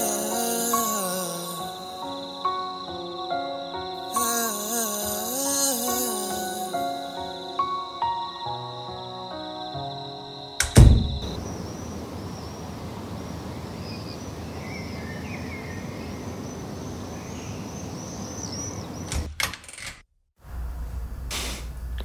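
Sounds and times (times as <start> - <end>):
high chirping calls: 0.0 - 19.1
sharp knocks: 10.6 - 11.4.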